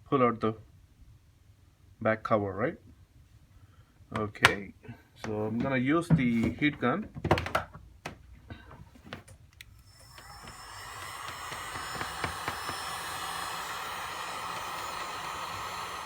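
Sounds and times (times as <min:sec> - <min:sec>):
heat gun fan blowing: 0:09.6 - 0:16.0.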